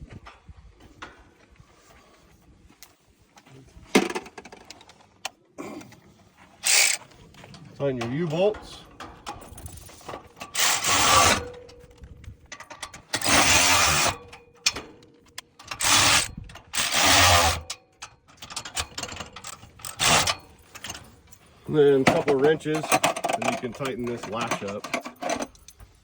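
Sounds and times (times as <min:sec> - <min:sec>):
ratchet wrench ratcheting: 0:06.6 - 0:07.0, 0:10.4 - 0:11.5, 0:12.7 - 0:14.3, 0:15.6 - 0:17.8, 0:18.4 - 0:20.5.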